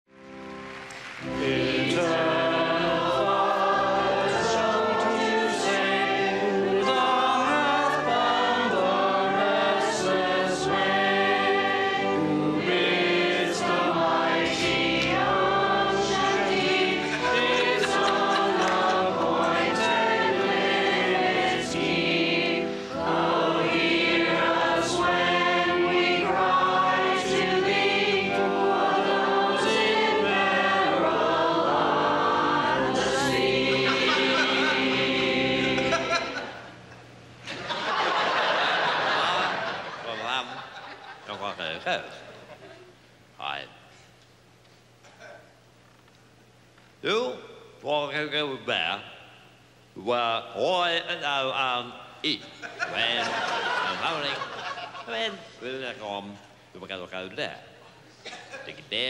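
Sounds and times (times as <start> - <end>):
choir singing a hymn: 1.2 - 36.9, 37.5 - 41.3, 52.7 - 56.0.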